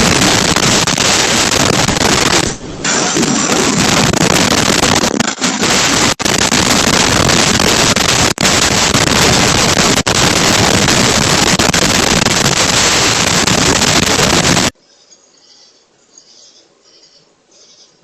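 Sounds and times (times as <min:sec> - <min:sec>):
wind blasting a microphone: 0:00.0 - 0:14.8.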